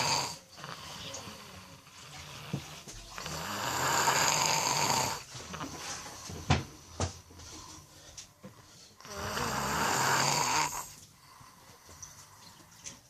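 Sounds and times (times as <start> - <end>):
person snoring: 0.0 - 5.6, 9.0 - 11.0.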